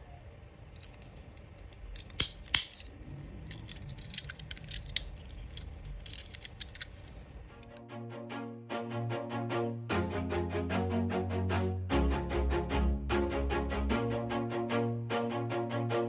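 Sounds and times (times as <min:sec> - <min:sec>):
plastic and metal parts clicking: 0:00.7 - 0:07.8.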